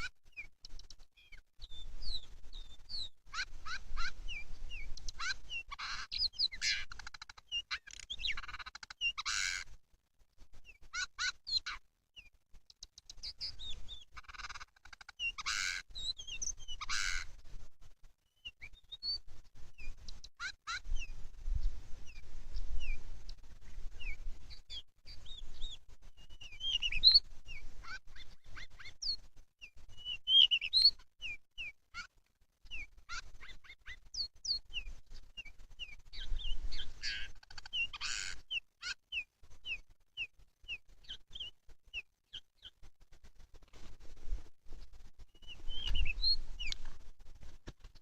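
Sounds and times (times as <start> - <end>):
bird chirping and whistling: 26.3 - 27.2, 45.4 - 46.7.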